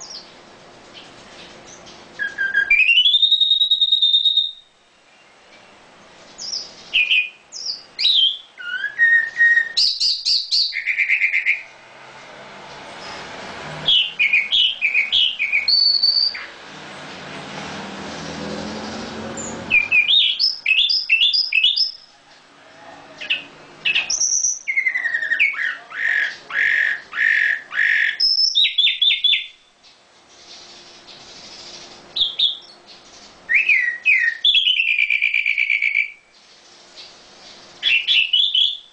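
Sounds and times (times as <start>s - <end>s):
songbird chirping and trilling: 0.0s - 11.8s, 12.9s - 16.7s, 18.6s - 38.9s
rushing noise: 16.4s - 19.9s.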